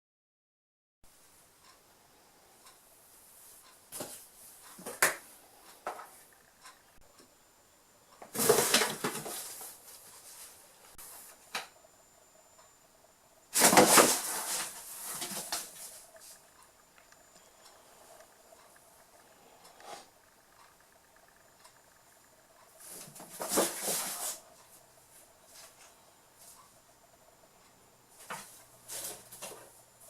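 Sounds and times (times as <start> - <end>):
scraping rustles on cardboard: 13.6 - 16.4, 22.9 - 24.4.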